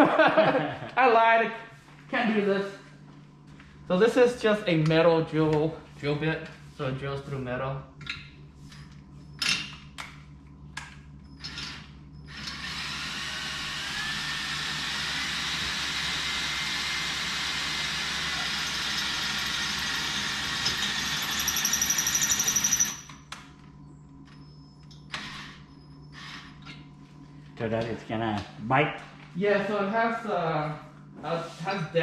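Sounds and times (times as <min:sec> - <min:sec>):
power drill boring into screw: 0:12.3 - 0:23.0.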